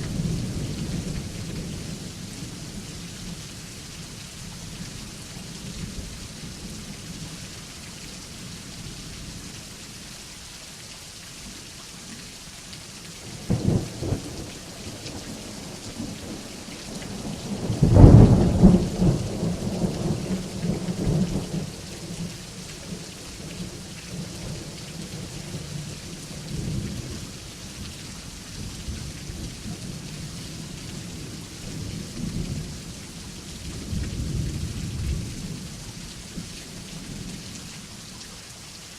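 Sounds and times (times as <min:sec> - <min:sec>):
steady rain: 0:00.0 - 0:38.9
rolling thunder: 0:17.3 - 0:21.8.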